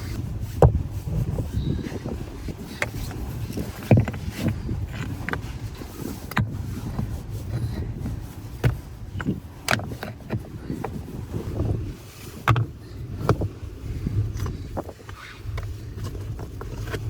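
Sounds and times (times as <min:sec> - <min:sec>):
sharp knocks and crunches: 0:00.0 - 0:13.5.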